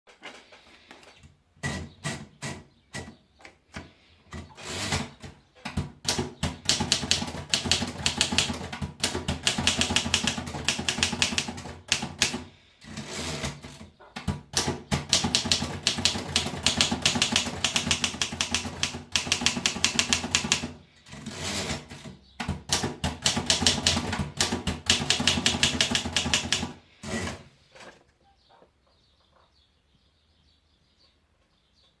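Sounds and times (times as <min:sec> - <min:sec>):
typewriter keystroke clatter: 0:06.0 - 0:12.5, 0:14.5 - 0:20.8, 0:22.4 - 0:26.8.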